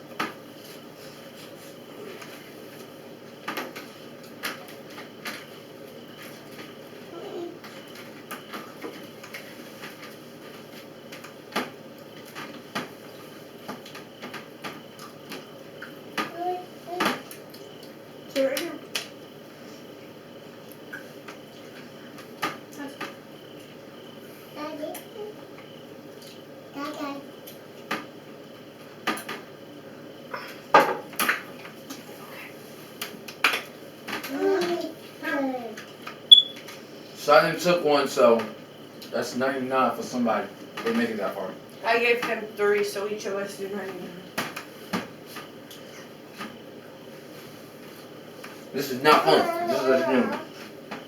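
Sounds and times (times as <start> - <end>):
indistinct talk: 48.8 - 50.5.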